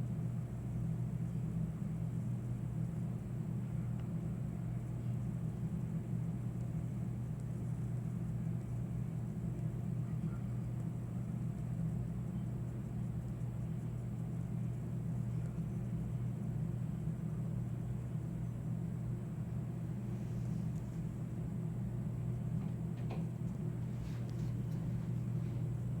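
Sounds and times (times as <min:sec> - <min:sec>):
low hum through wall: 0:00.0 - 0:26.0
faint clicks inside wall: 0:22.5 - 0:25.1.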